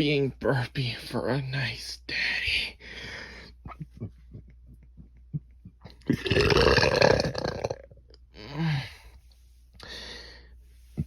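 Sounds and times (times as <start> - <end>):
person burping: 5.8 - 8.0
soft breath out: 8.6 - 11.0.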